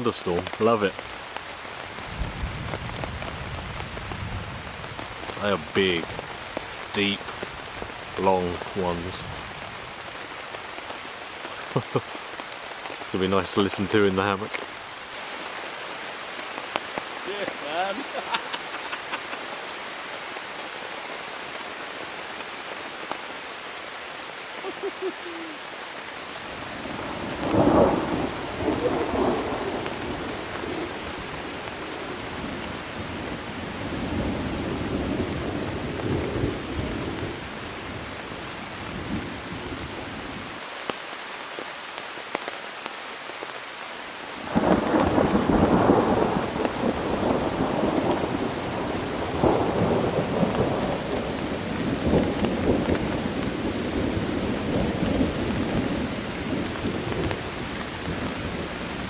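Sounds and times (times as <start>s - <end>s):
heavy rain: 0.0s - 59.0s
thunder cracking and rumbling: 26.6s - 37.4s, 44.5s - 59.0s.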